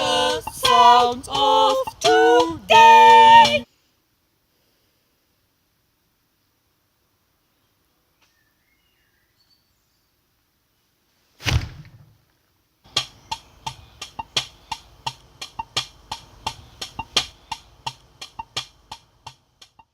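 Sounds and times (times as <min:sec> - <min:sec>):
rhythmic clicking beat: 0:00.0 - 0:03.7, 0:12.9 - 0:19.9
faint high chirps: 0:08.2 - 0:10.2
loud thud: 0:11.4 - 0:12.2.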